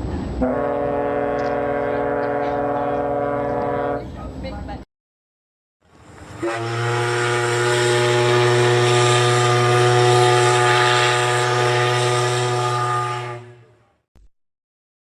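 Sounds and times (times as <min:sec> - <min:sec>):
low ship's horn blast: 0:00.4 - 0:04.2, 0:06.4 - 0:14.0.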